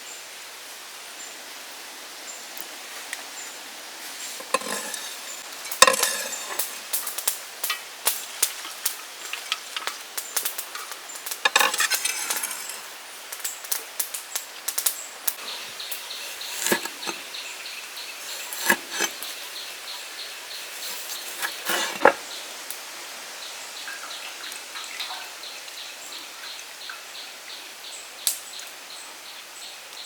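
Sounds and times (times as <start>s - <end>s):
utensils and dishes clinking: 4.2s - 6.9s, 11.3s - 12.9s, 16.2s - 17.3s, 18.2s - 19.4s, 20.7s - 22.3s.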